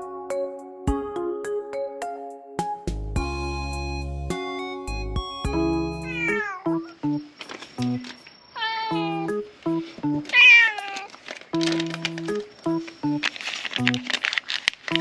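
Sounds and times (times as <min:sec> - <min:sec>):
light music with plucked notes: 0:00.0 - 0:08.2, 0:09.0 - 0:14.3
cat meowing: 0:06.0 - 0:07.0, 0:08.6 - 0:09.4, 0:10.3 - 0:11.1.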